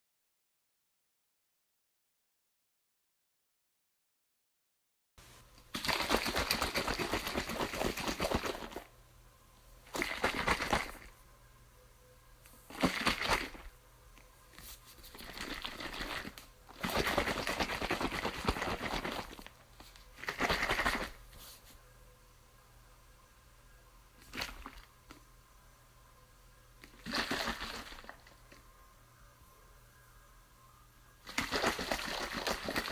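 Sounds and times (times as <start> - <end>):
water sloshing in shaken bottle: 5.7 - 8.9, 9.9 - 11.1, 12.7 - 13.7, 14.6 - 21.2, 24.2 - 24.9, 26.8 - 28.6, 31.2 - 32.9.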